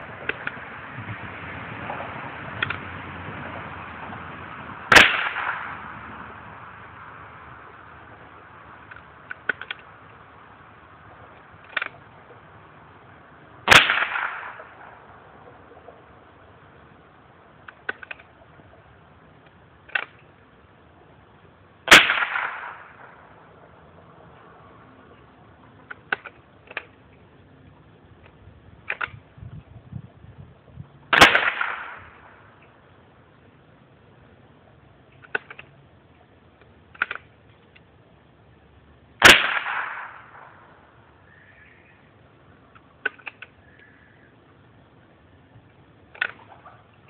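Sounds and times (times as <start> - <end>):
rifle shot with echo: 4.9 - 5.9, 13.7 - 15.1, 21.9 - 23.4, 31.1 - 32.5, 39.2 - 40.9
small clicks: 35.1 - 35.8, 36.6 - 37.9, 42.7 - 44.0, 46.1 - 46.6.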